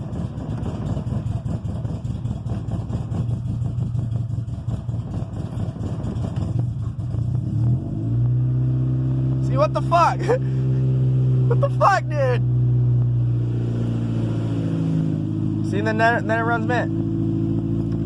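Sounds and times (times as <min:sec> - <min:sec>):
car engine idling roughly: 0:00.0 - 0:07.4.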